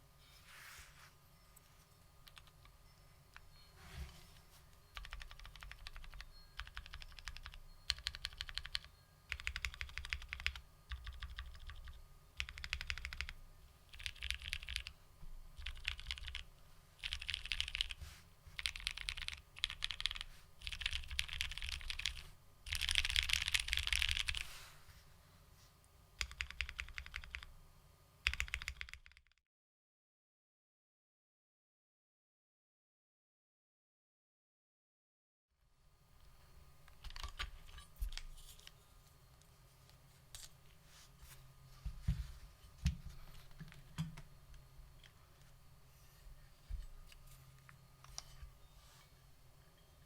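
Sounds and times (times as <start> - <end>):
mechanical keyboard typing: 2.2 - 2.7, 4.9 - 15.0, 15.6 - 18.0, 18.6 - 24.5, 26.2 - 27.5, 28.2 - 29.4, 37.0 - 37.5.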